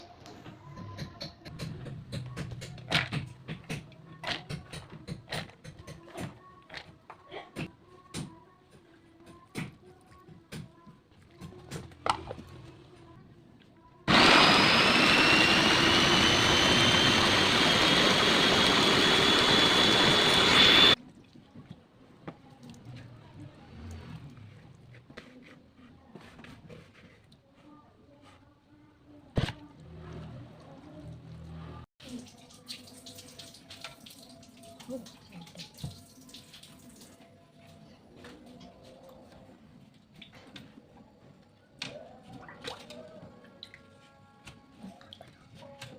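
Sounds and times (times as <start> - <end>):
electric blender whirring: 14.1 - 21.0
water running in a sink: 32.0 - 37.2.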